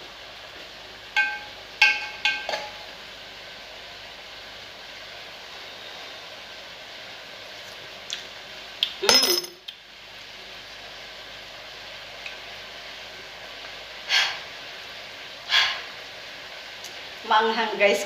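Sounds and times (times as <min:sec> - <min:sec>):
steady hiss: 0:09.7 - 0:18.0.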